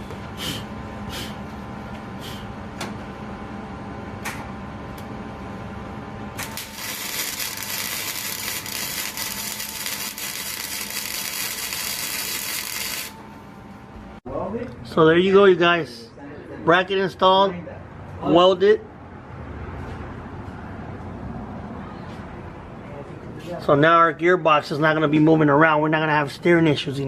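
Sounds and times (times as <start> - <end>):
steady welder hum: 0.0 - 14.2
arc welding crackling: 6.3 - 13.3.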